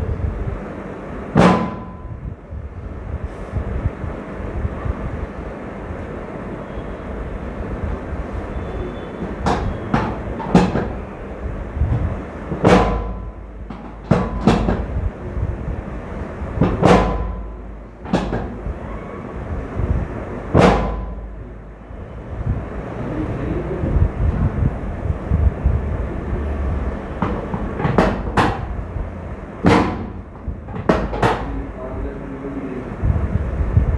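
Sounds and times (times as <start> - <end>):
steady low rumble: 0.0 - 33.9
sharp percussive impacts: 1.3 - 2.3, 11.9 - 15.2, 16.5 - 18.7, 20.5 - 21.4, 27.1 - 31.7.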